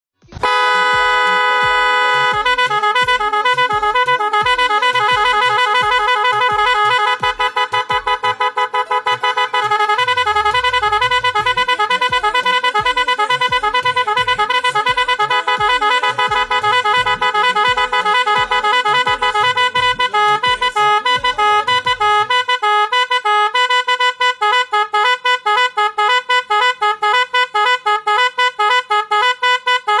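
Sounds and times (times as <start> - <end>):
bass beat: 0.3 - 23.2
electronic motorbike horn melody: 0.4 - 30.0.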